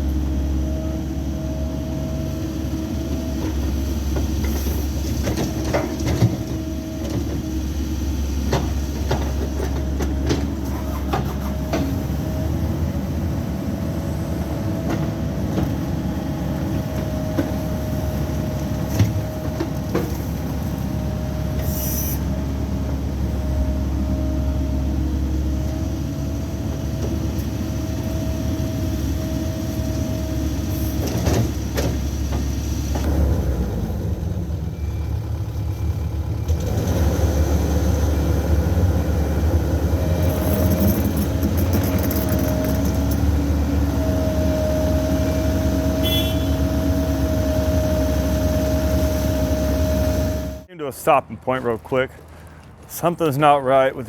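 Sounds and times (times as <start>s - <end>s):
mini excavator engine whining: 0.0s - 50.7s
machine clanks and knocks: 40.2s - 43.4s.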